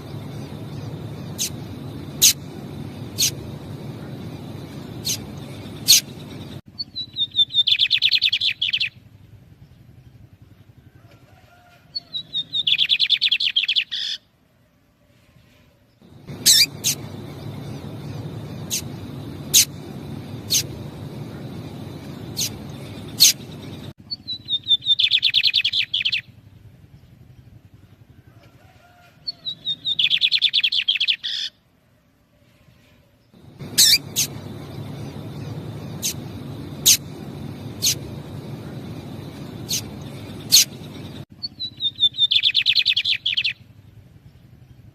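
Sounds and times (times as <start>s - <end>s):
birds trilling song phrases: 0.0s - 8.9s, 16.1s - 26.2s, 33.4s - 43.6s
sharp bird chip notes: 16.1s - 23.9s, 33.4s - 41.2s.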